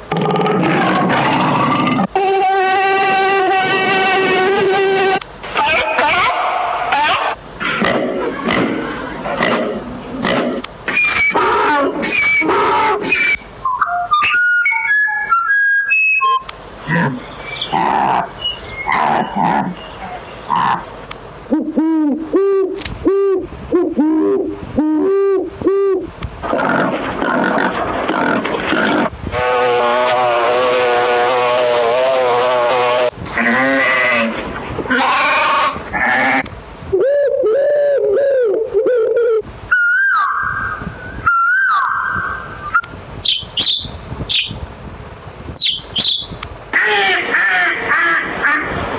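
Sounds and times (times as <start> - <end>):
bird whistled calls: 10.9 - 11.4, 12.1 - 16.4, 39.7 - 44.6, 45.5 - 46.4
owl hooting: 10.9 - 13.4, 42.7 - 44.6, 45.5 - 46.4
steady pitched tone: 42.7 - 44.6, 45.5 - 46.4
short sharp bird calls: 43.2 - 44.6, 45.6 - 46.4.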